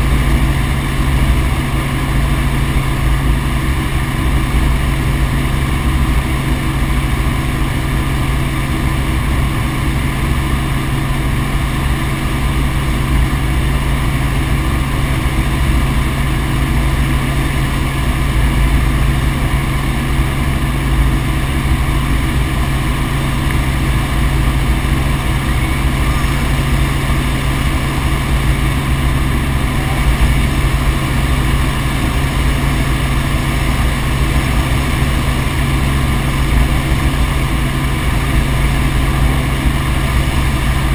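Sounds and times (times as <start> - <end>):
helicopter engine and rotor drone: 0.0 - 40.9.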